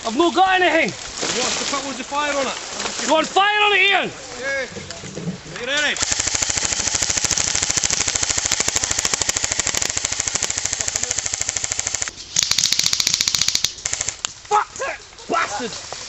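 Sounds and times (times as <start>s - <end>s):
airsoft gun firing bursts: 6.0s - 14.3s.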